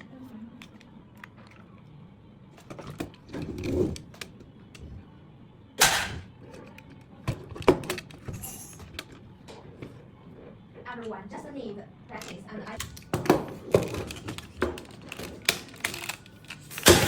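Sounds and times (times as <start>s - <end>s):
small clicks of hard parts: 14.0s - 17.0s.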